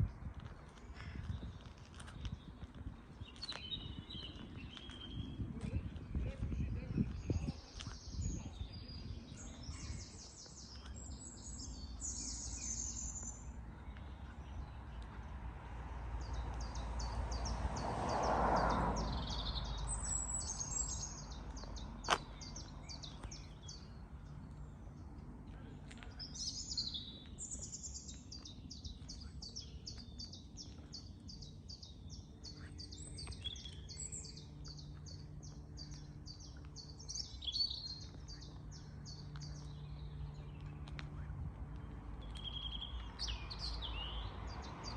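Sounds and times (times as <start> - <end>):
birds chirping: 0.0 - 15.6, 16.2 - 44.9
vehicle passing by: 14.0 - 25.5, 37.9 - 44.9.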